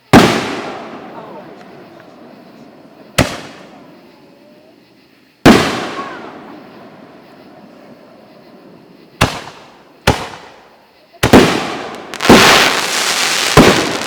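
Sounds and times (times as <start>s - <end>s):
firework shells banging: 5.4s - 14.0s.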